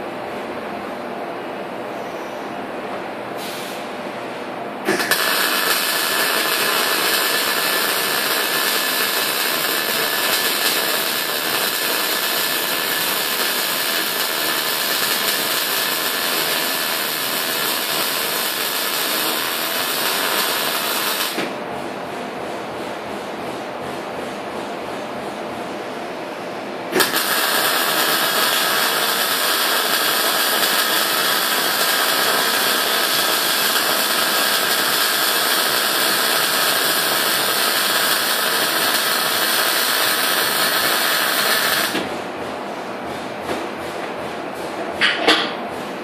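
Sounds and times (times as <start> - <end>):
electric arc welding crackle: 4.9 - 21.5, 26.9 - 42.0.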